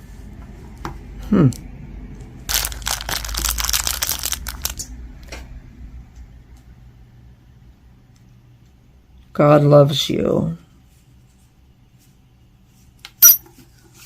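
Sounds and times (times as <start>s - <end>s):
plastic bag crinkling: 2.5s - 4.9s.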